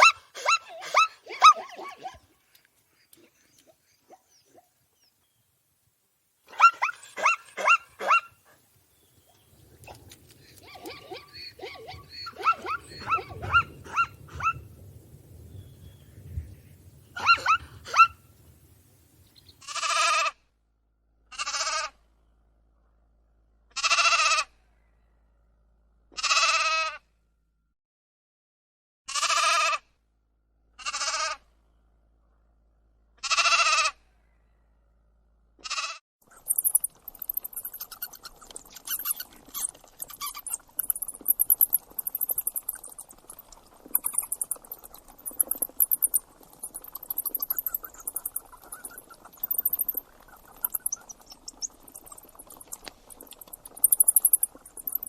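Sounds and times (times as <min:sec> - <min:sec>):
short animal calls: 0:09.8 - 0:14.7, 0:17.1 - 0:18.3, 0:19.6 - 0:20.3, 0:21.3 - 0:21.9, 0:23.8 - 0:24.5, 0:26.2 - 0:27.0, 0:30.8 - 0:31.4, 0:33.2 - 0:34.0, 0:35.6 - 0:55.0
sheep bleating: 0:21.3 - 0:21.9, 0:23.8 - 0:24.4, 0:26.2 - 0:26.9, 0:33.2 - 0:34.0.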